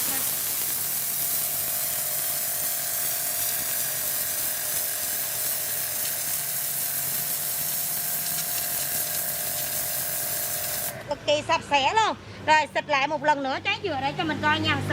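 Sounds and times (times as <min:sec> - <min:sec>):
pressure washer pump whine: 0:00.0 - 0:11.0
water jet hissing: 0:00.0 - 0:11.0.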